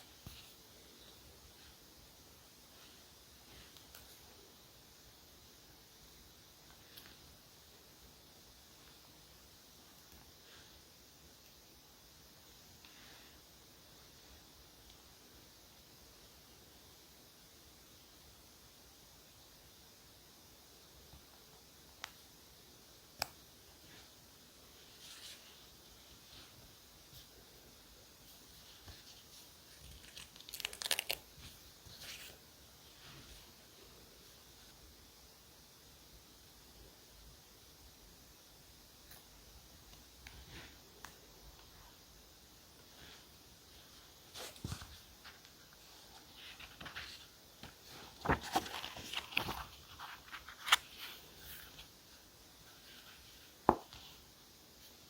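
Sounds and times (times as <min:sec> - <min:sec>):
paper rustling: 0:28.3 - 0:33.5, 0:44.3 - 0:51.9
paper rustling and scraping: 0:46.0 - 0:51.9.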